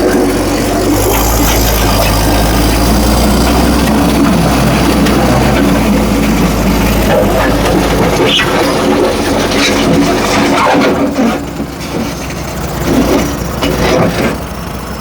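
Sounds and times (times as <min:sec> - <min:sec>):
diesel engine idling: 0:00.0 - 0:15.0.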